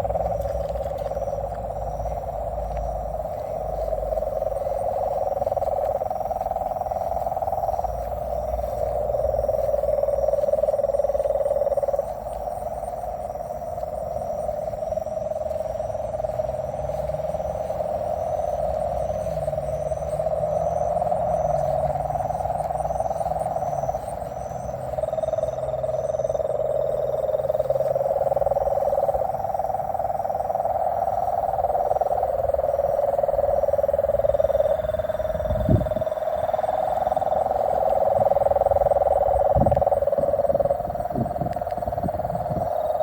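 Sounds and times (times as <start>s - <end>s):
chorus of calling frogs: 0.0s - 43.0s.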